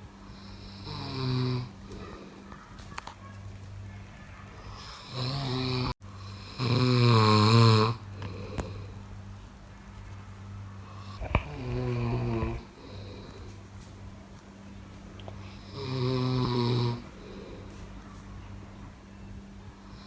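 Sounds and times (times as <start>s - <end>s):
steady low hum: 0.0s - 20.0s
person snoring: 0.3s - 2.4s, 4.8s - 9.0s, 11.0s - 13.6s, 15.4s - 17.7s.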